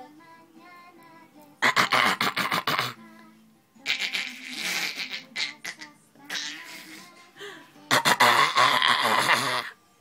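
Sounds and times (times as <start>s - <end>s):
person coughing: 1.6s - 3.0s, 7.9s - 9.7s.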